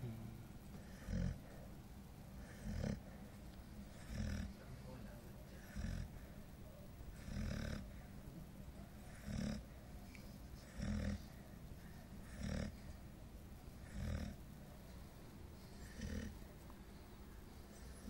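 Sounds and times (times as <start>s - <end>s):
dog snoring: 0.8s - 1.7s, 2.4s - 3.2s, 3.9s - 4.8s, 5.4s - 6.3s, 7.1s - 8.1s, 9.0s - 9.8s, 10.6s - 11.4s, 12.2s - 13.0s, 13.7s - 14.4s, 15.6s - 16.4s, 17.6s - 18.0s.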